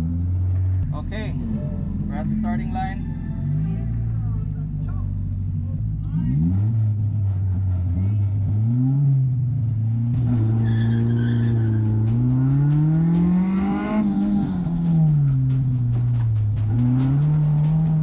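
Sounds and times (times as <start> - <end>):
car engine revving hard: 3.4 - 18.0.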